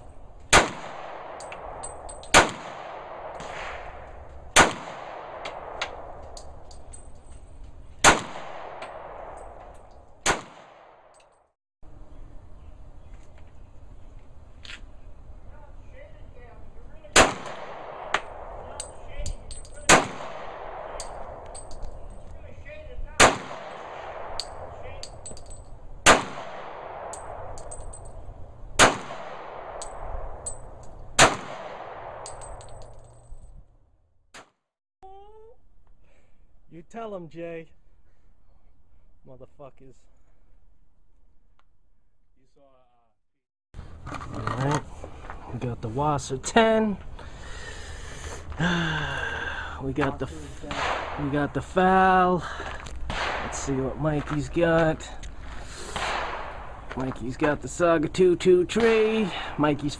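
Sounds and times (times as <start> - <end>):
gunshots with echo: 0.5 - 6.2, 8.0 - 9.6, 10.2 - 11.2, 17.2 - 19.0, 19.8 - 21.4, 23.2 - 24.8, 26.0 - 27.6, 28.8 - 30.4, 31.2 - 32.6, 50.6 - 51.5, 53.1 - 54.0, 55.9 - 56.9.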